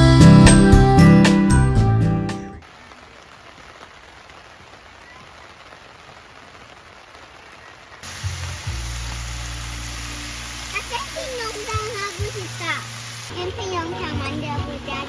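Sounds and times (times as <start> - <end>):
steady background hiss: 5.7 - 15.0.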